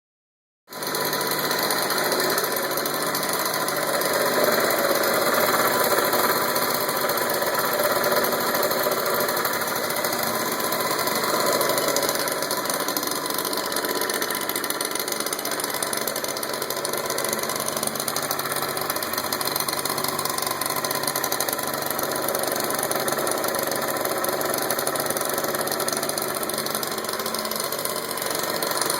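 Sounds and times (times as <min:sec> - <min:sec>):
motor scooter engine rumbling: 0:00.7 - 0:28.9.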